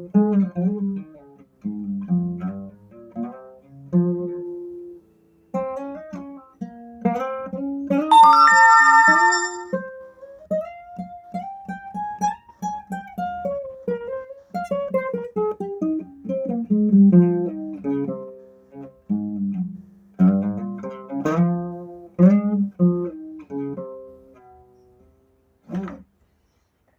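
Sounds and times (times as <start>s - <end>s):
acoustic guitar plucked notes: 8.1s - 9.8s.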